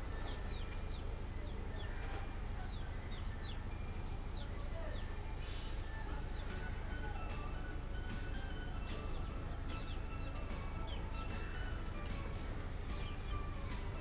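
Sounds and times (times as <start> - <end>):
chickens chirping: 0.0 - 14.0
steady low hum: 0.0 - 14.0.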